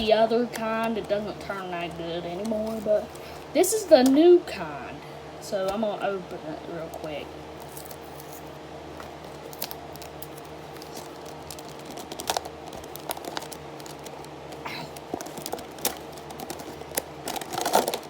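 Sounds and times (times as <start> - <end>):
packaging crinkling and tearing: 0.0 - 3.5, 6.8 - 18.0
sharp clicks and rustles: 6.9 - 18.0.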